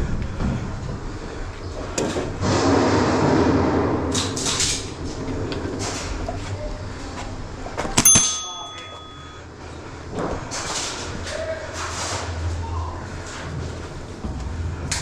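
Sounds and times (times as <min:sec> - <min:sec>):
ringing metallic strike: 0:08.0 - 0:09.4.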